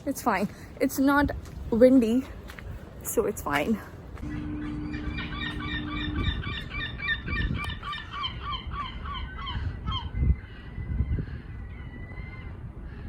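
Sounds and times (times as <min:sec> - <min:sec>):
low steady hum: 0:04.1 - 0:07.3
flock of birds calling: 0:04.3 - 0:11.5.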